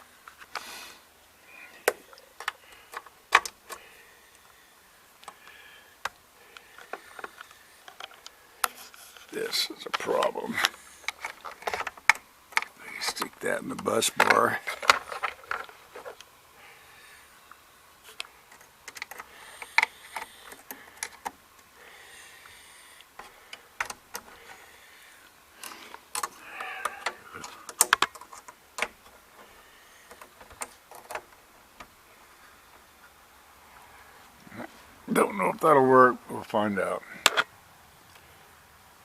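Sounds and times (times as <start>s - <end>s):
test leads clicking and rustling: 5.2s - 16.4s, 17.5s - 21.8s, 22.4s - 33.2s.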